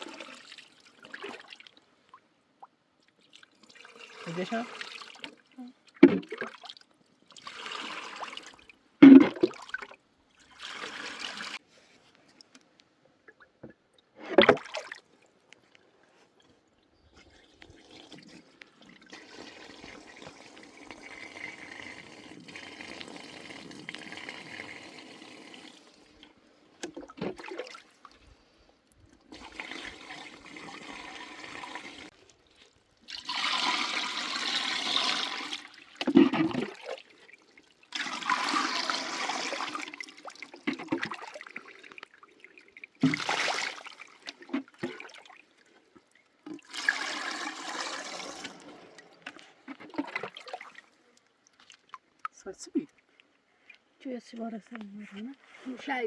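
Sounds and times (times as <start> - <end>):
water pouring and splashing: 0.0 - 1.8, 3.2 - 11.6, 17.2 - 28.3, 28.9 - 53.2.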